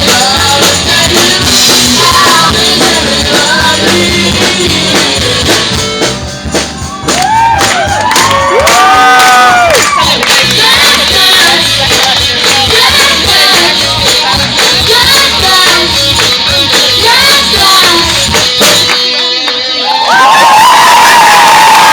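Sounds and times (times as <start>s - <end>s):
voices singing: 0.0s - 5.7s, 10.2s - 18.9s
live rock band playing: 0.0s - 21.9s.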